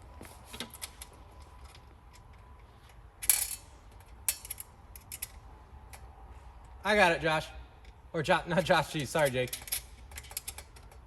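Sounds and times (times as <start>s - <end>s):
metal hardware clicking and clinking: 0.6s - 6.1s, 8.9s - 11.0s.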